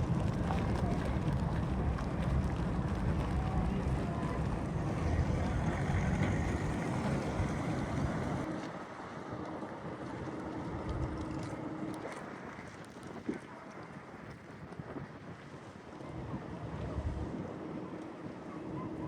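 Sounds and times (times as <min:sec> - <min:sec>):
heavy low rumble: 0:00.0 - 0:08.5
wind buffeting microphone: 0:00.0 - 0:08.5
rush of boat moving: 0:00.0 - 0:19.0.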